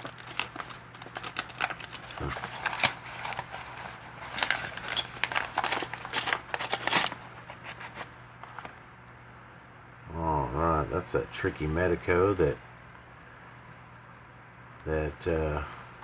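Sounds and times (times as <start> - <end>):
metal locks clicking and rattling: 4.4 - 7.2.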